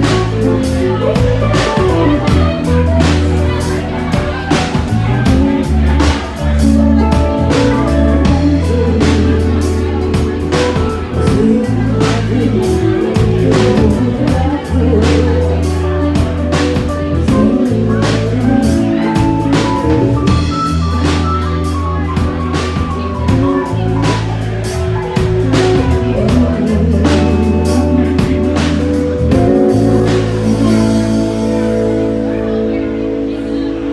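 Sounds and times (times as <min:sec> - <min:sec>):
drum kit hits: 0:00.0 - 0:14.6
guitar: 0:00.0 - 0:33.9
held bass notes: 0:00.0 - 0:33.9
live blues-rock band: 0:00.0 - 0:33.9.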